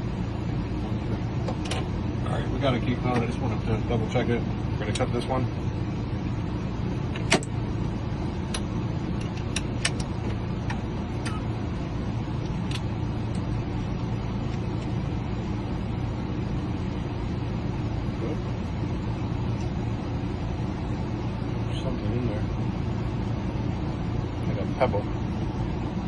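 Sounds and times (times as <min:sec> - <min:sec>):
sharp metallic clicks: 0:08.5 - 0:10.1.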